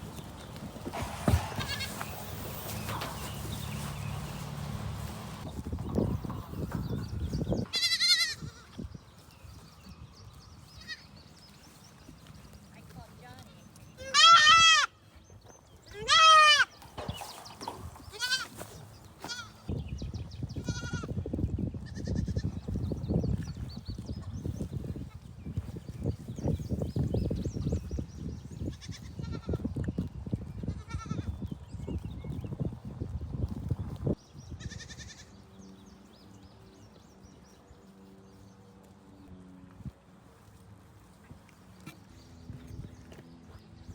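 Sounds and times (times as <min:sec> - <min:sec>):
goats bleating: 0:01.5 - 0:02.1, 0:07.7 - 0:08.8, 0:14.0 - 0:15.0, 0:15.9 - 0:16.7, 0:18.1 - 0:18.6, 0:19.2 - 0:19.6, 0:20.6 - 0:21.1, 0:30.7 - 0:31.3, 0:34.6 - 0:35.3.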